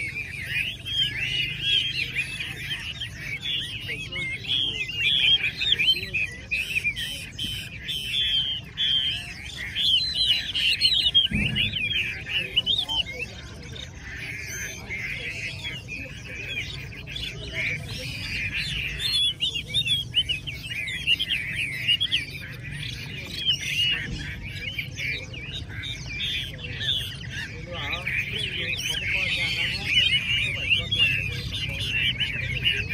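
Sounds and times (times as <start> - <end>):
many birds singing: 0.0 - 32.9
low thump: 11.3 - 12.0.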